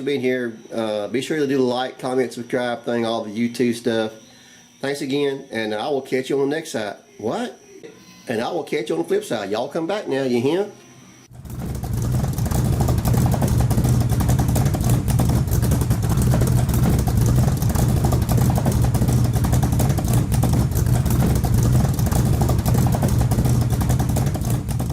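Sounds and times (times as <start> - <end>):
vehicle engine running loudly: 11.3 - 24.9.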